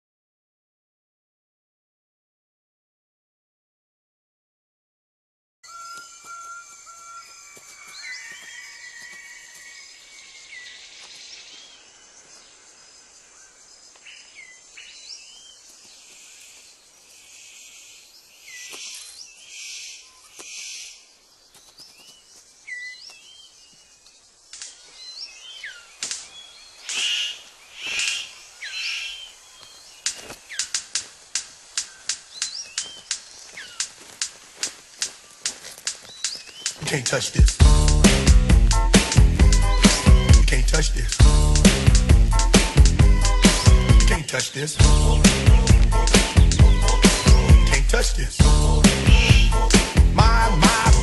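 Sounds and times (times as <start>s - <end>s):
bird chirps: 5.6s - 37.6s, 39.5s - 40.4s, 43.3s - 51.0s.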